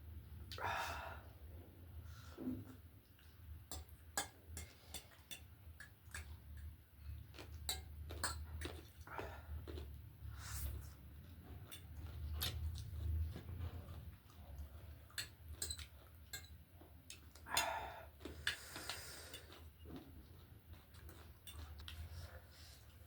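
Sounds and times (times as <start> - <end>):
chewing: 3.0 - 23.0
cutlery clicking on dishes: 15.2 - 16.6.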